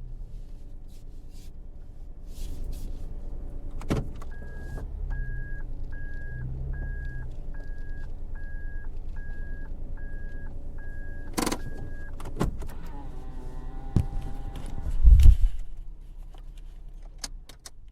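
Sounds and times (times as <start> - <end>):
low engine rumble: 0.0 - 17.9
car warning chime beeping: 4.3 - 14.6
clicks: 5.8 - 10.5
car door thumping shut: 13.9 - 15.4.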